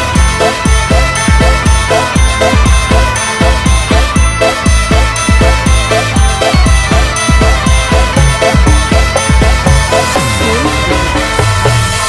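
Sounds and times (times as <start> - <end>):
bell-like electronic tones: 0.0 - 11.9
heavy bass beat: 0.0 - 12.0.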